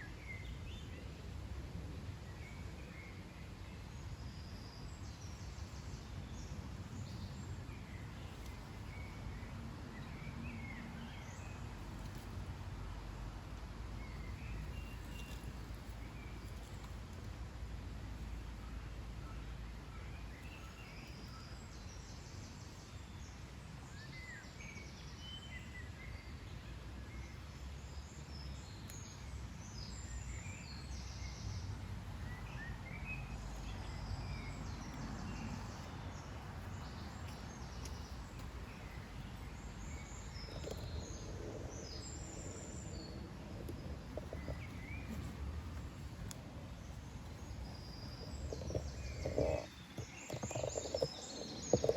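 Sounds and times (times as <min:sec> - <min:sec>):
low outdoor background rumble: 0:00.0 - 0:51.9
small birds chirping: 0:13.9 - 0:51.9.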